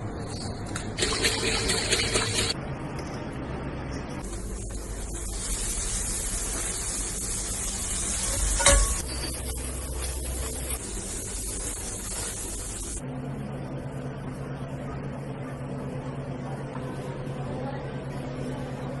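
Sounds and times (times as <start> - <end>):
machine hum: 1.0 - 13.2
food sizzling in a pan: 4.2 - 13.0.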